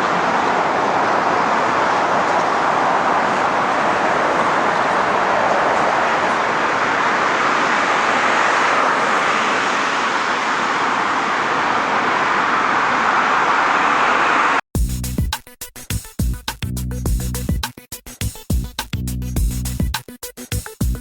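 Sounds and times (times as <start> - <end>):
road traffic passing: 0.0 - 14.6.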